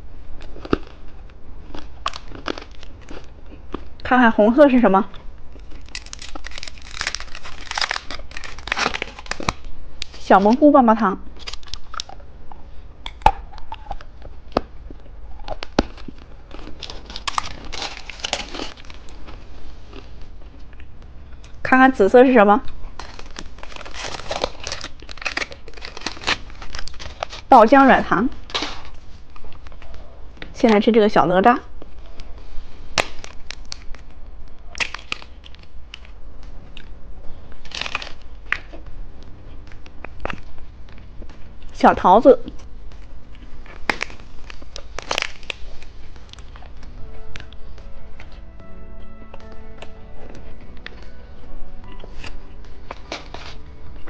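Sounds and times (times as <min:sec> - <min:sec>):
plastic wrapper crinkling: 0:00.4 - 0:03.9, 0:05.4 - 0:10.6, 0:11.3 - 0:12.2, 0:15.5 - 0:20.2, 0:22.8 - 0:27.5, 0:32.1 - 0:36.2, 0:37.5 - 0:38.8, 0:42.5 - 0:48.4.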